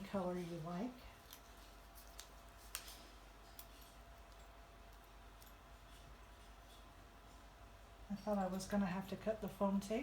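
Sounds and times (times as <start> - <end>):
faint clicks of paper handling: 1.2 - 4.5.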